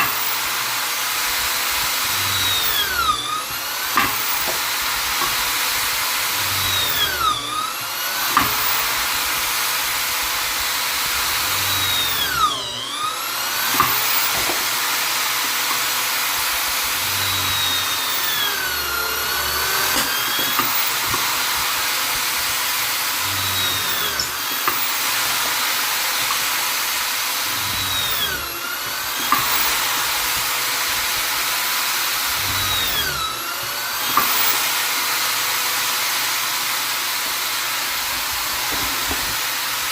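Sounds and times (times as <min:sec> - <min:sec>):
electric drill motor whining: 0:00.0 - 0:39.9.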